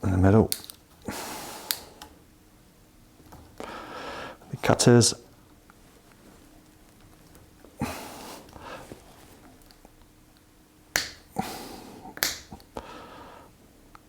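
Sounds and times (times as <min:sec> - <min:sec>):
wire cutters snapping cable: 0:00.5 - 0:00.9, 0:12.2 - 0:12.7
cable rustling: 0:05.3 - 0:07.8, 0:08.4 - 0:10.1.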